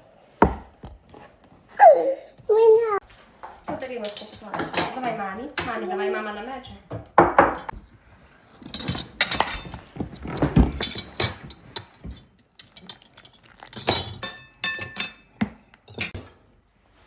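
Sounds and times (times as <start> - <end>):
dishes and cutlery clinking: 3.0 - 6.3, 7.2 - 16.4.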